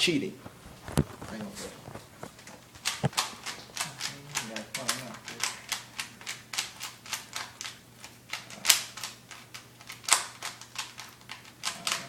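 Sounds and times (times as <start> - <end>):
plastic puzzle cube twisting clicks: 2.8 - 12.0.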